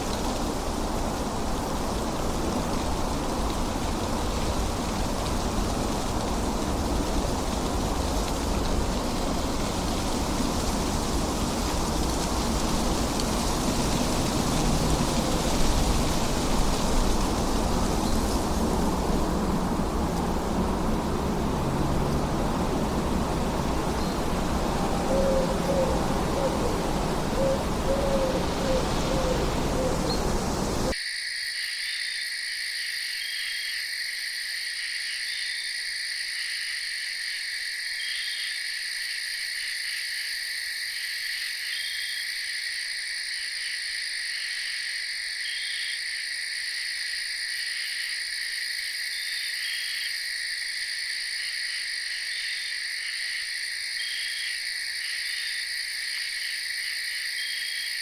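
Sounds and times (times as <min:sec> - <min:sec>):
rain hiss: 0:00.0 - 0:31.0
insects trilling: 0:00.0 - 0:58.0
frogs chirping: 0:19.3 - 0:42.3, 0:47.7 - 0:58.0.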